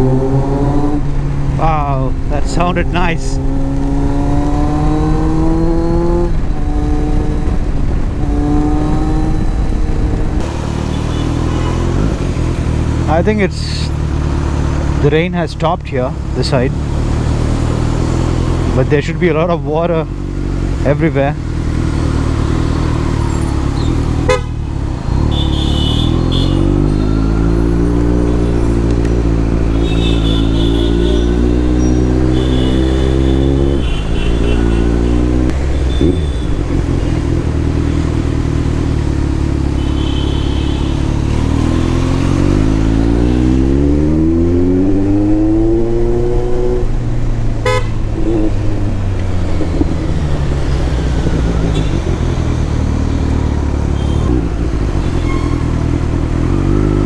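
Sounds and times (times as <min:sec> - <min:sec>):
motorcycle engine accelerating: 0:00.0 - 0:57.0
vehicle horns honking: 0:06.4 - 0:12.6, 0:23.1 - 0:36.8, 0:39.7 - 0:43.8, 0:47.6 - 0:48.6, 0:50.9 - 0:52.4, 0:53.9 - 0:56.8.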